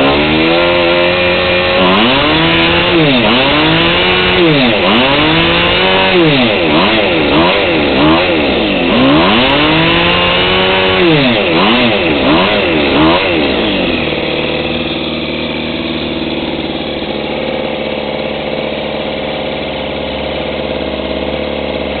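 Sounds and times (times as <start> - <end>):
small boat engine revving: 0.0 - 22.0.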